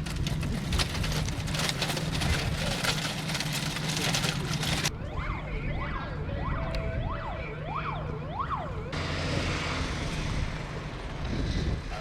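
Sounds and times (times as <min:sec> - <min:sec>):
vehicle engine rumble: 0:00.0 - 0:12.0
emergency vehicle siren wailing: 0:04.9 - 0:09.6.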